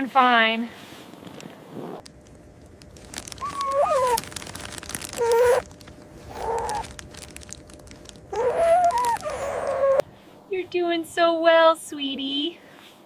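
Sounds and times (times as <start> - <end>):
animal cub mewing: 3.2 - 4.4, 5.0 - 7.0, 8.3 - 10.0.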